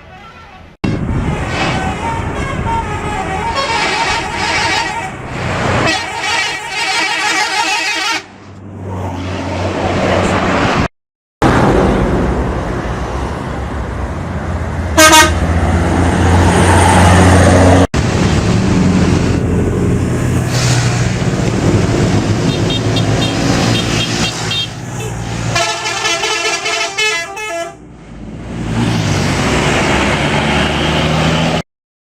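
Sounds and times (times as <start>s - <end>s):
bus musical horn: 0.0s - 8.4s, 15.0s - 15.5s, 22.4s - 27.9s
bus engine running: 0.0s - 31.6s.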